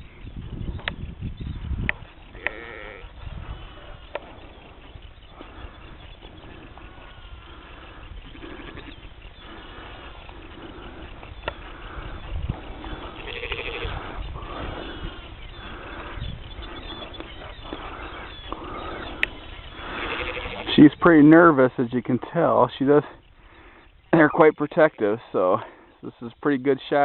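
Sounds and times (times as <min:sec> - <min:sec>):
sheep and lambs bleating: 0:02.3 - 0:03.8, 0:06.6 - 0:09.2, 0:12.9 - 0:14.2, 0:19.8 - 0:20.8.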